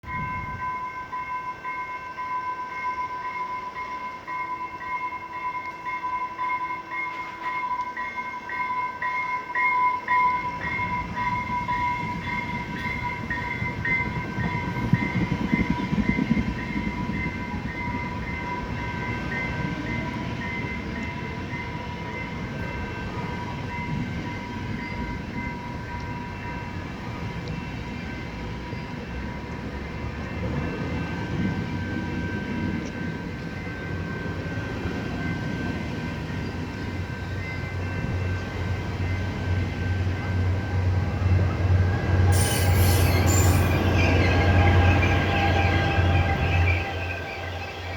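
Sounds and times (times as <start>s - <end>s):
train wheels rumbling on rail: 3.0s - 47.9s
bell ringing: 42.3s - 45.3s.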